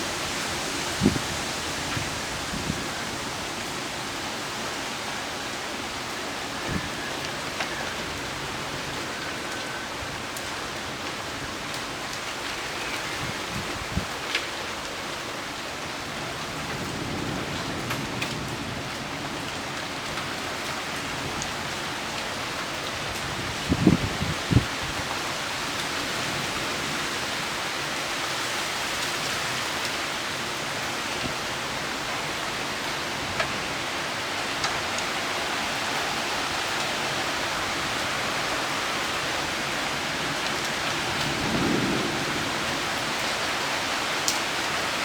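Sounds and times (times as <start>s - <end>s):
heavy rain falling: 0.0s - 45.0s
raindrops tapping nearby: 6.0s - 26.6s, 30.7s - 45.0s.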